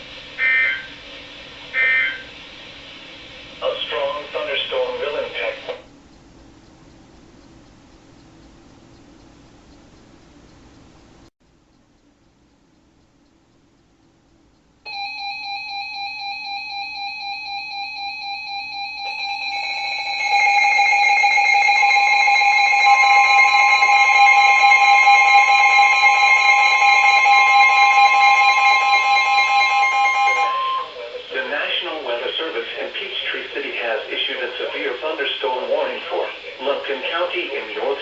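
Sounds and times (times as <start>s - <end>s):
steady alarm tone: 0.0s - 5.7s, 14.9s - 38.0s
pulsing electronic alarm tone: 0.4s - 1.0s, 1.7s - 2.4s, 14.9s - 31.4s.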